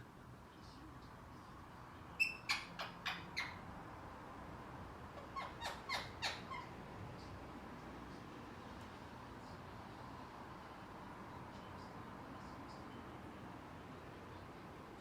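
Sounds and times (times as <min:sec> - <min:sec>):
parakeet giving sharp calls: 0:02.2 - 0:03.6, 0:05.2 - 0:06.8.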